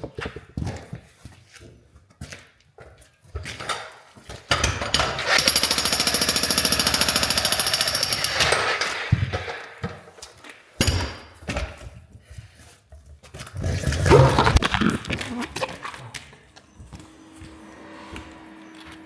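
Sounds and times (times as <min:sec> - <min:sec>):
jackhammer breaking concrete: 0:04.5 - 0:09.2.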